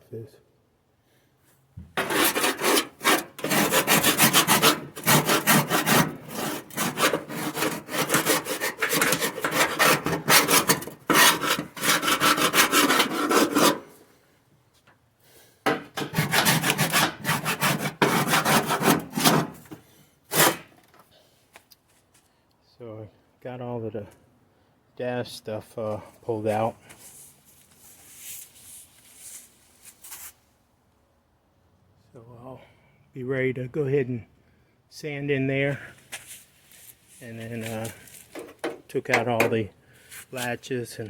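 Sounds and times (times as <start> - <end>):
hand tool rubbing strokes: 2.0 - 14.0, 16.0 - 20.7.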